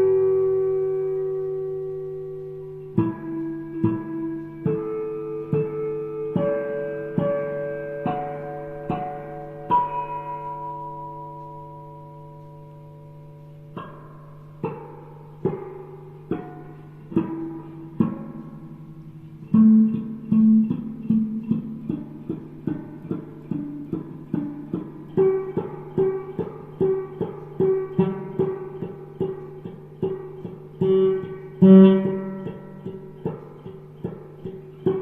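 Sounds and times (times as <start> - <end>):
guitar plucked notes: 0.0 - 35.0.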